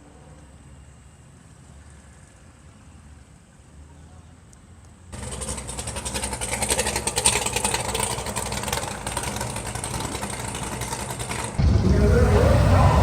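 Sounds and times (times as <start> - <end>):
race car engine idling loudly: 5.2 - 13.0.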